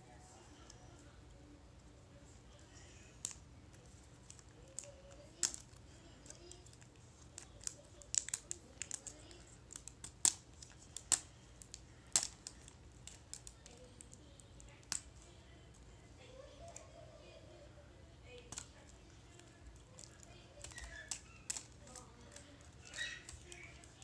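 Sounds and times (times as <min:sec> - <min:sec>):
plastic wrapping clicking and snipping: 0:03.1 - 0:15.8, 0:18.3 - 0:24.0.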